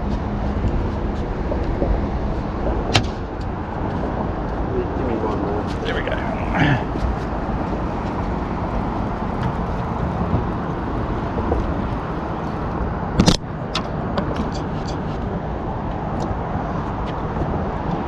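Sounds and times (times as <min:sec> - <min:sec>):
low engine rumble: 0:00.0 - 0:18.0
sharp click: 0:13.2 - 0:15.0.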